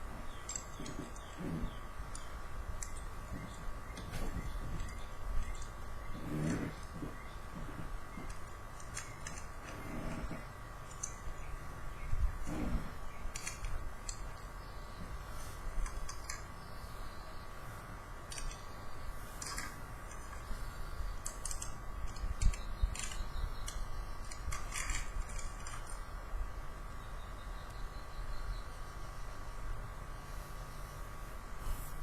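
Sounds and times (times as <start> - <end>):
steady background hum: 0.0 - 32.0
plastic toy parts clicking: 0.4 - 1.4, 2.1 - 5.8, 8.2 - 11.5, 13.3 - 14.4, 15.8 - 16.5, 18.3 - 18.7, 19.4 - 20.5, 21.2 - 26.0.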